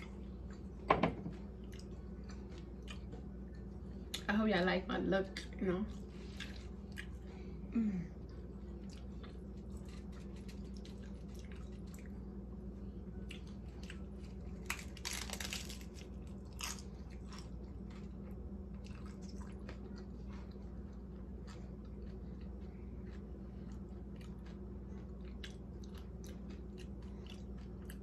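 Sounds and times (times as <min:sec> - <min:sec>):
chewing crunchy food: 0:01.4 - 0:04.3, 0:05.4 - 0:07.6, 0:08.2 - 0:28.0.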